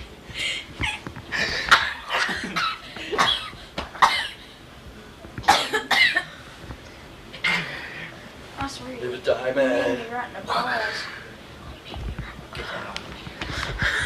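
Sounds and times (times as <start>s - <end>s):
boy coughing: 1.7s - 4.4s, 5.5s - 6.3s.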